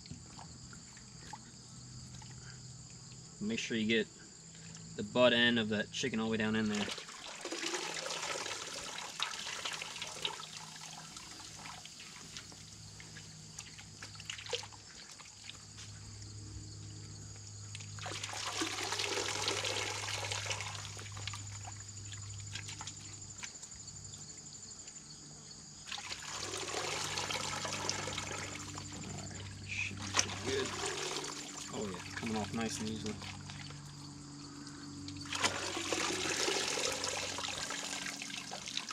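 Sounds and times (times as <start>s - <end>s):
water sloshing in a pot: 6.6s - 16.3s, 17.7s - 24.3s, 25.9s - 34.0s, 35.2s - 38.9s.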